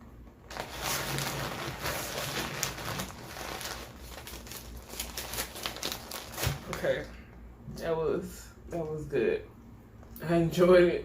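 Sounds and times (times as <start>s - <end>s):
food wrappers crumpling: 0.4s - 7.1s.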